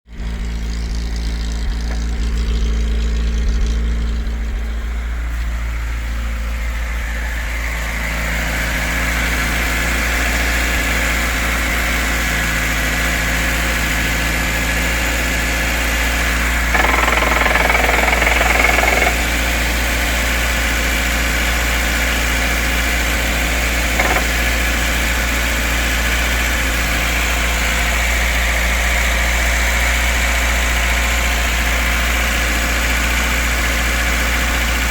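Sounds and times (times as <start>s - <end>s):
car engine knocking: 15.7s - 27.0s.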